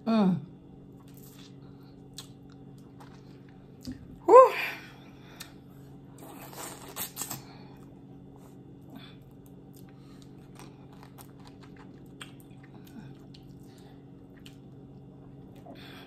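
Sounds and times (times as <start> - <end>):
steady low hum: 0.0 - 16.0
soft chewing and sucking: 0.9 - 4.0, 5.3 - 15.8.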